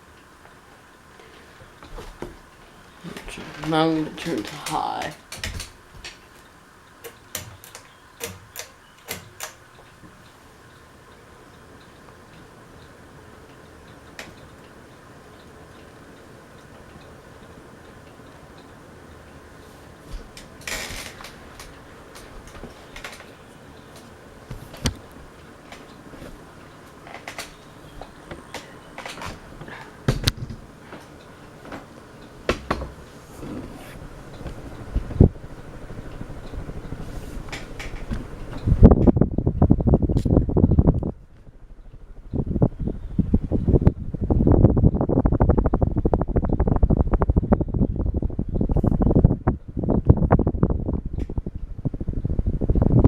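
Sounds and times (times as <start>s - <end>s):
ceiling fan running: 0.0s - 53.0s
fan switch clicks: 3.1s - 10.9s, 20.1s - 33.1s, 34.0s - 53.0s.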